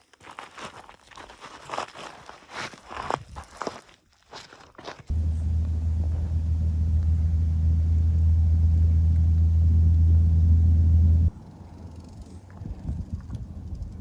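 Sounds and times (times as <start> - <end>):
crunching footsteps: 0.0 - 6.4
steady low rumble: 5.1 - 14.0.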